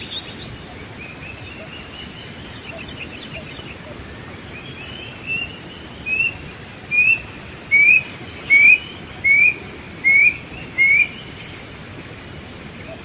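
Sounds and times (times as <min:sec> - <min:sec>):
faint high insect trill: 0:00.0 - 0:13.0
bird upslurred whistles: 0:06.9 - 0:11.2.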